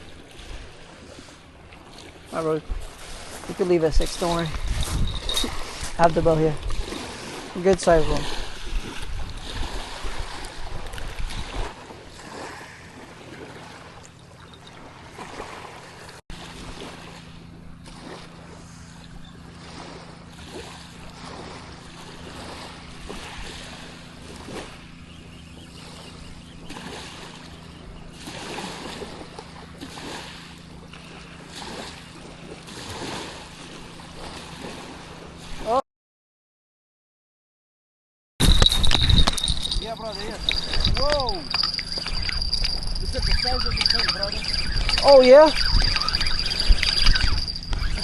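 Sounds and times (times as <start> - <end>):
water lapping against rocks: 0.0 - 25.0, 25.7 - 35.7, 38.4 - 48.0
wind buffeting microphone: 2.6 - 12.5, 38.4 - 48.0
steady low hum: 38.4 - 48.0.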